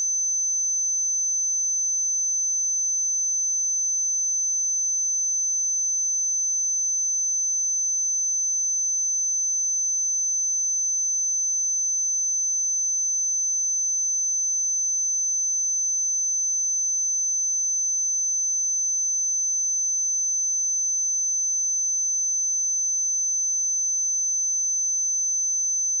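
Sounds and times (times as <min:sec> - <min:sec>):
high-pitched sine test tone: 0:00.0 - 0:26.0.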